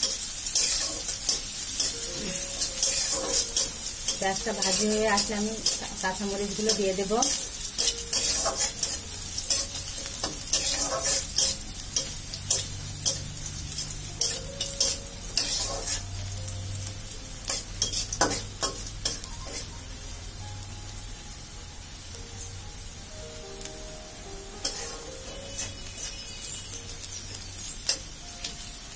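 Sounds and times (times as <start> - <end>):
spatula scraping pan: 0.0 - 16.0, 17.5 - 19.7, 24.6 - 26.3
onion sizzling in oil: 0.0 - 28.9.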